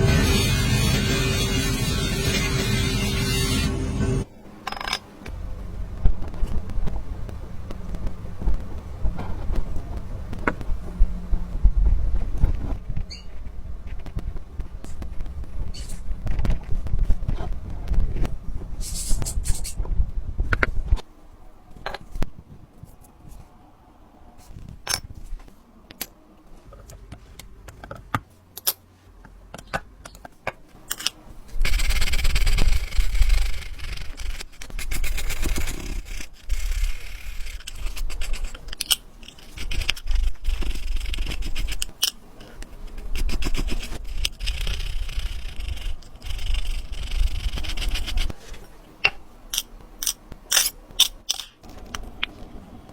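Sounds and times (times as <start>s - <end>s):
hand tools scraping metal parts: 30.9s - 31.2s, 49.6s - 51.5s.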